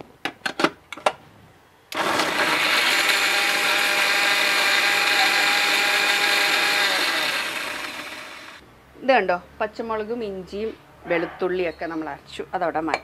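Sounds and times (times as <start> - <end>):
mixer grinder motor whine: 1.9 - 8.6.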